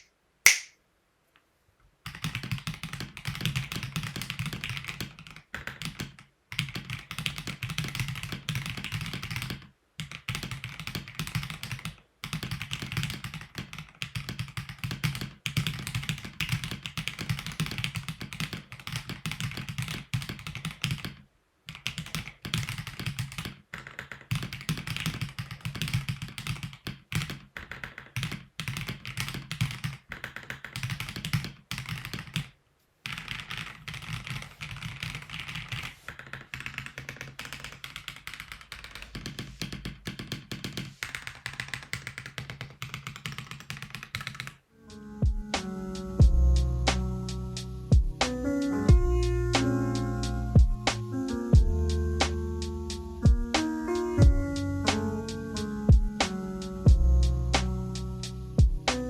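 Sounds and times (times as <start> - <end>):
mechanical keyboard typing: 2.1 - 44.6.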